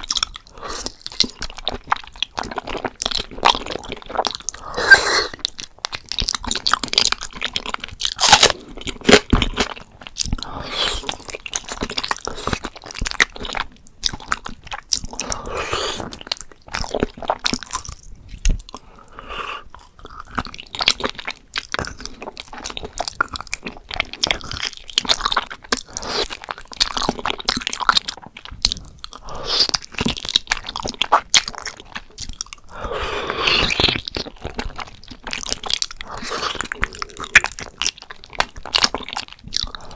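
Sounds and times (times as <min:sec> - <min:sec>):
biting and chewing: 0:00.0 - 0:39.9
mouth clicks: 0:04.2 - 0:06.4, 0:28.7 - 0:34.7.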